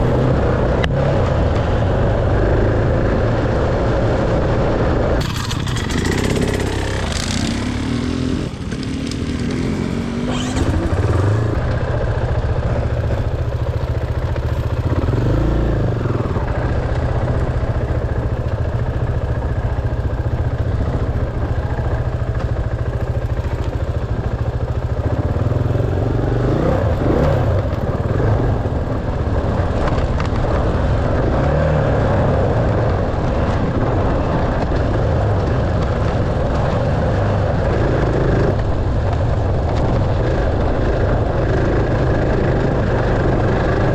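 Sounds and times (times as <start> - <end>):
dirt bike engine revving: 5.2 - 12.2, 13.9 - 17.8, 25.0 - 29.7.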